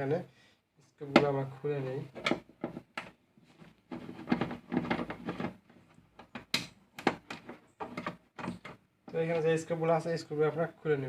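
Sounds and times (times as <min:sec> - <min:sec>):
plastic cover clicks and knocks: 0:03.9 - 0:08.8.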